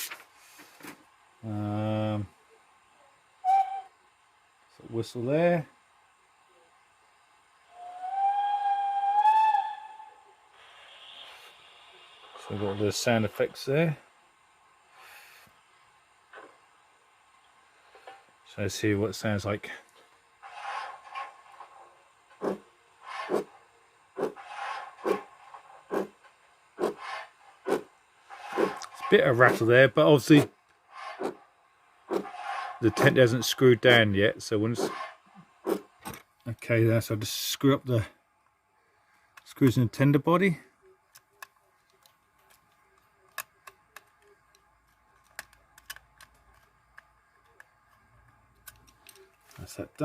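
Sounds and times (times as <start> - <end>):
steam exhaust chuffs: 20.4 - 36.0.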